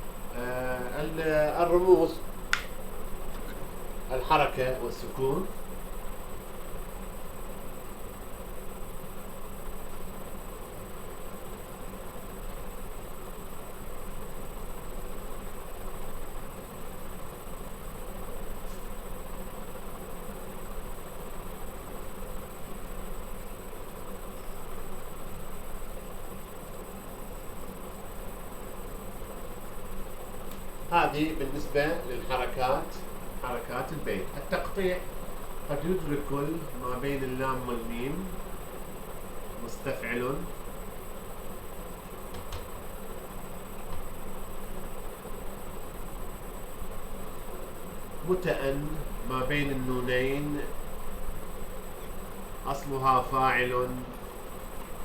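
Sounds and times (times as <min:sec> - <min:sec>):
buzzing hum and hiss: 0:00.0 - 0:55.0.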